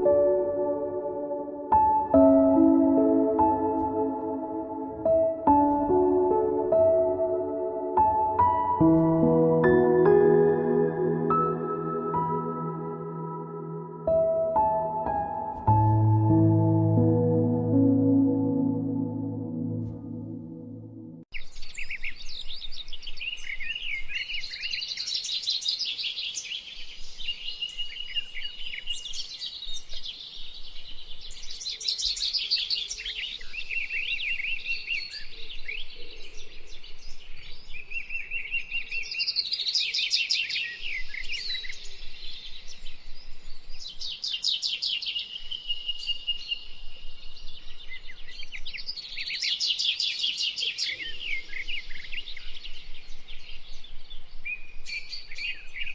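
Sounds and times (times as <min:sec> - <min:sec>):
birds singing and trilling: 0:21.4 - 0:55.9.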